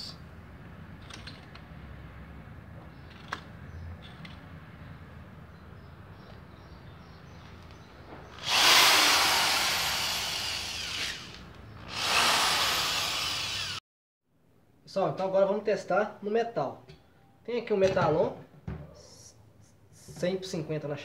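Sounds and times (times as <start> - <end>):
drill grinding into brick wall: 8.3 - 13.8.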